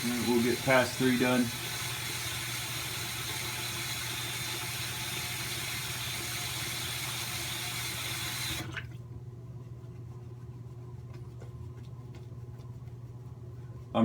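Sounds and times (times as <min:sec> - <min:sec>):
sink tap running: 0:00.0 - 0:08.9.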